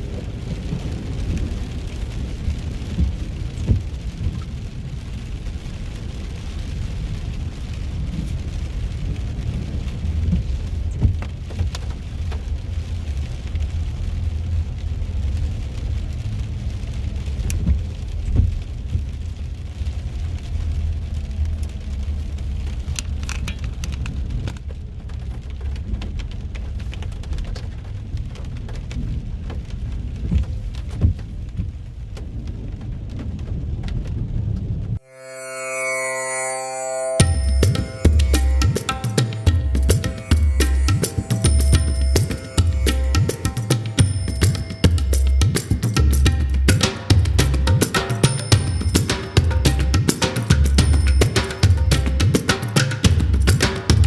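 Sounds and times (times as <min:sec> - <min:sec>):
rain on car roof: 0:00.0 - 0:35.0.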